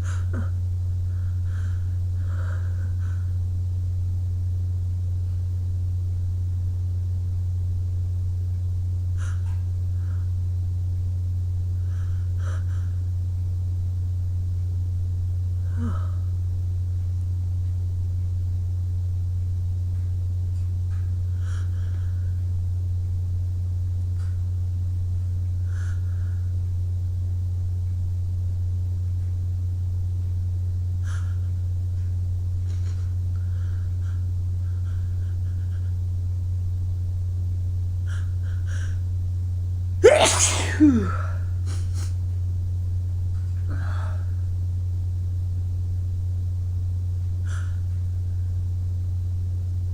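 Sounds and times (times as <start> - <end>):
steady low hum: 0.0 - 49.9
person sneezing: 40.0 - 42.1.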